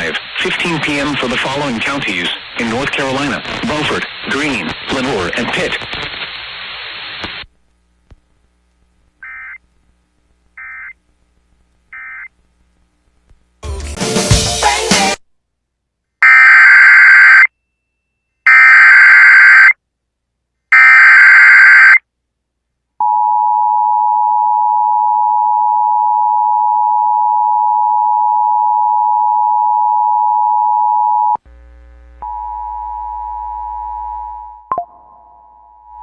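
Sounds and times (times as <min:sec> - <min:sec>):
low hum: 0:31.5 - 0:36.0.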